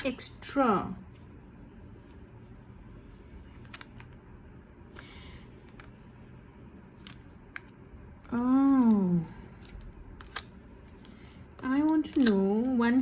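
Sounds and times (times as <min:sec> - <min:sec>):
low steady hum: 0:00.0 - 0:13.0
cards clicking: 0:07.0 - 0:12.9.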